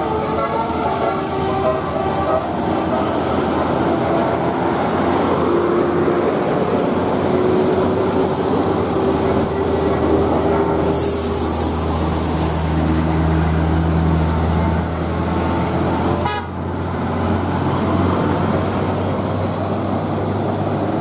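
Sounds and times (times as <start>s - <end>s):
multi-note air horn: 0.0s - 3.7s, 16.2s - 16.6s
bus engine and road noise: 0.0s - 21.0s.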